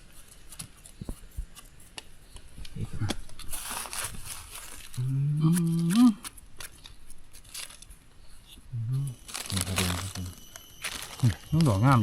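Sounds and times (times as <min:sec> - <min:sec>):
dry leaves rustling and crackling: 0:03.5 - 0:05.1, 0:09.2 - 0:12.0.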